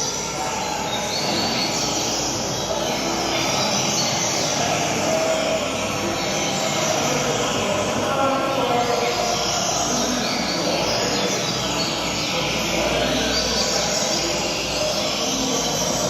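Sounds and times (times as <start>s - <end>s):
bird chirping: 0.0s - 16.0s.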